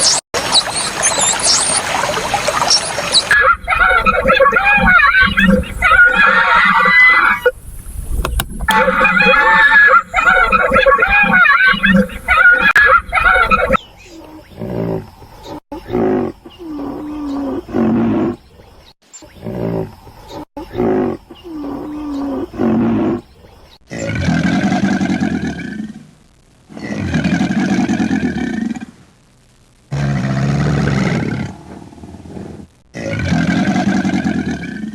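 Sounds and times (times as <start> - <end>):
long rough animal calls: 3.3 - 7.6, 8.6 - 13.8.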